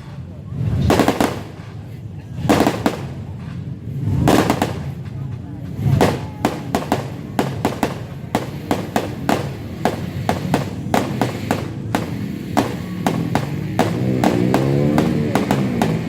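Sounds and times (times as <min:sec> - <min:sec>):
fireworks bangs and crackling: 0:00.0 - 0:16.0
low background rumble: 0:00.0 - 0:16.0.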